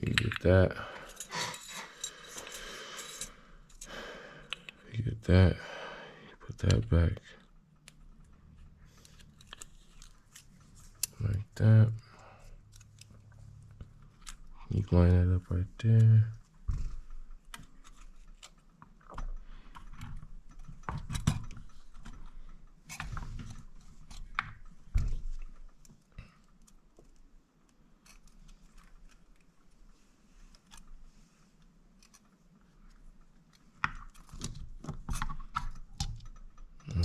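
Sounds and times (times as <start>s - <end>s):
small metal parts clicking: 0.0s - 4.9s, 7.4s - 11.4s, 25.3s - 29.8s.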